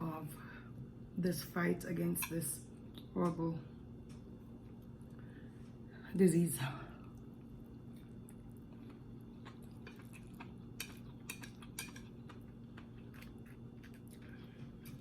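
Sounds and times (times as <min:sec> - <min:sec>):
low electrical hum: 0:00.0 - 0:15.0
chewing and utensil clicks: 0:07.9 - 0:15.0.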